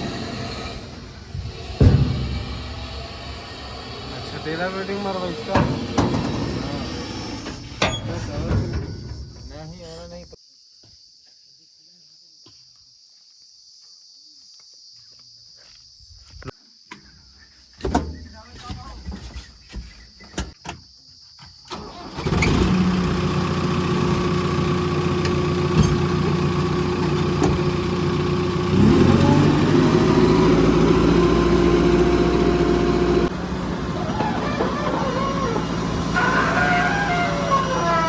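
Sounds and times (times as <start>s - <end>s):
diesel engine running and revving: 0.0s - 9.5s, 21.8s - 38.0s
clicks before engine start: 21.6s - 23.3s.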